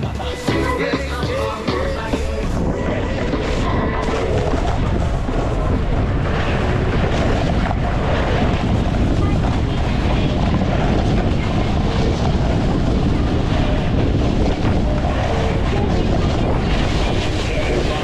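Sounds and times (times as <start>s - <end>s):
music: 0.0s - 7.1s
wind rushing over microphone: 0.0s - 18.0s.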